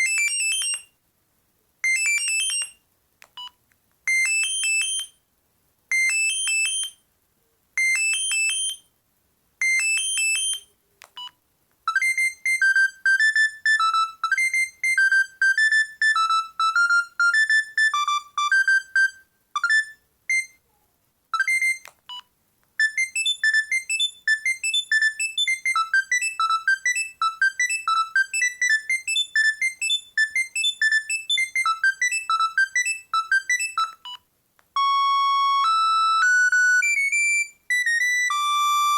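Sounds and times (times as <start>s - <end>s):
phone ringtone beeps: 0.0s - 0.9s, 1.8s - 2.8s, 4.1s - 5.2s, 5.9s - 7.0s, 7.8s - 8.8s, 9.6s - 11.3s, 11.9s - 20.6s, 21.4s - 22.2s, 22.8s - 34.2s, 35.6s - 38.9s
single-note ringtone melody: 11.9s - 20.6s, 22.8s - 34.0s, 34.8s - 38.9s.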